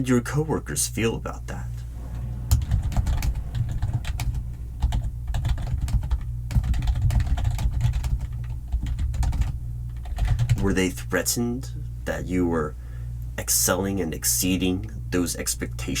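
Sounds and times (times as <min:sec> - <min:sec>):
rapid typing on keyboard: 0:02.5 - 0:10.7.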